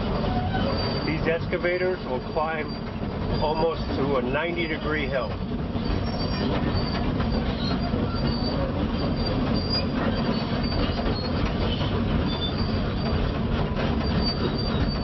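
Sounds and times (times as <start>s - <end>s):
excavator diesel engine under load: 0.0s - 15.0s
steel tracks clanking and squeaking: 0.0s - 15.0s.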